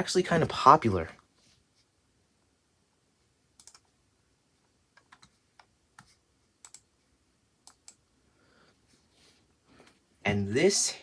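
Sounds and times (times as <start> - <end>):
computer keyboard clicks: 3.6 - 3.9, 5.0 - 6.9, 7.6 - 8.0.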